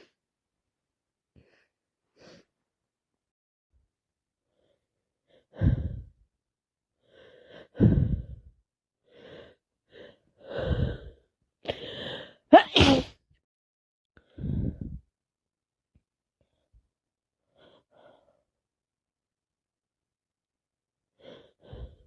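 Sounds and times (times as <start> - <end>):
gasping breaths: 7.0 - 8.5, 9.1 - 12.4, 21.2 - 22.0
woman sneezing: 12.6 - 13.2.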